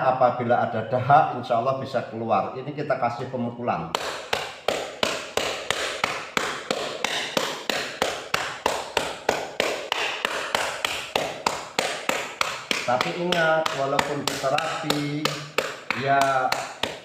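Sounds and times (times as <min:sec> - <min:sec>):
cupped-hand slaps on a back: 0:03.9 - 0:17.0.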